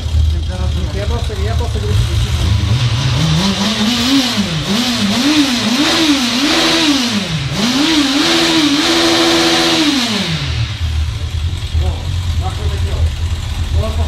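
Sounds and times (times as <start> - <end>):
motorcycle engine revving: 0.0 - 14.0.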